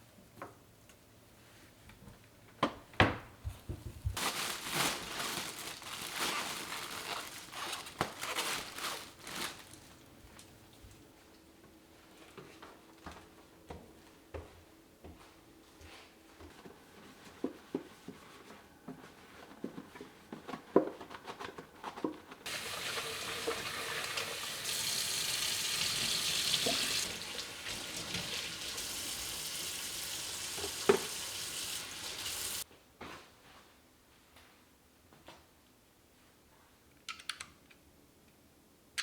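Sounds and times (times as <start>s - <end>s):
tap water running into sink: 22.5s - 32.6s.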